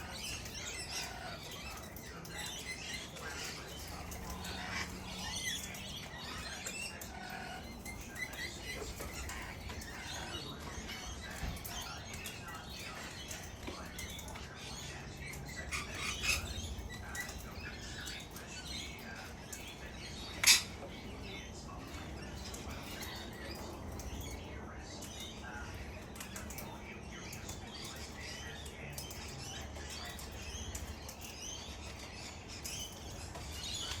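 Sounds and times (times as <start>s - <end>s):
parrots chirping and squawking: 0.0s - 34.0s
wing flaps and rustles: 0.0s - 34.0s.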